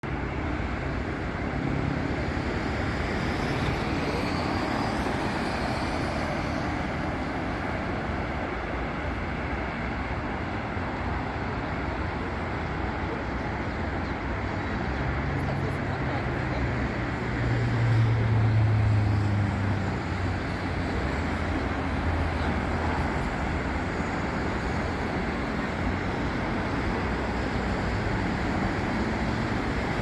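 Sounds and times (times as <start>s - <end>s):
road traffic rumble: 0.0s - 30.0s.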